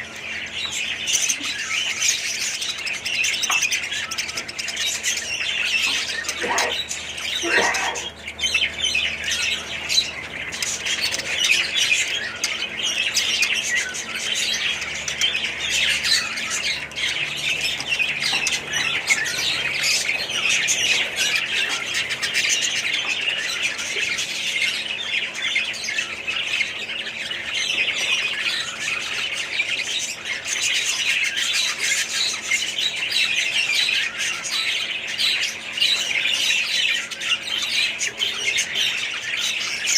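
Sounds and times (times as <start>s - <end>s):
budgerigars chattering and chirping: 0.0s - 39.9s
falling squawks: 5.7s - 8.4s.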